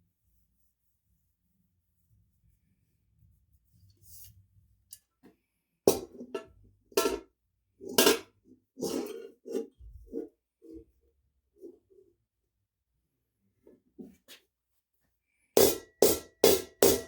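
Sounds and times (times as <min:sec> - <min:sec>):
hammer striking steel plate: 0:15.6 - 0:17.0.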